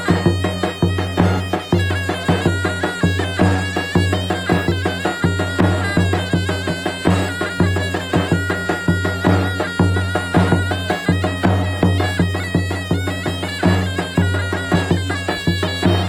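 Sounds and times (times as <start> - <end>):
drum beats: 0.0 - 16.0
shrill reedy pipe melody: 0.0 - 16.0.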